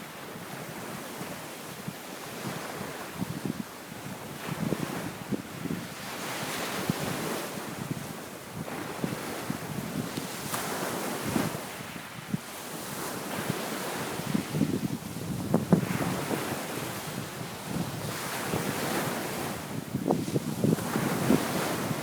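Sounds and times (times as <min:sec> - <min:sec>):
waves breaking on beach: 0:00.0 - 0:22.0
wind buffeting microphone: 0:02.4 - 0:22.0.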